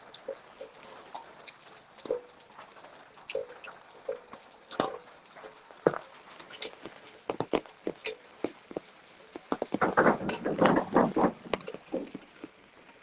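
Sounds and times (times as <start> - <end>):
rustling and clattering: 4.2 - 13.0
sharp taps and clicks: 5.9 - 12.5.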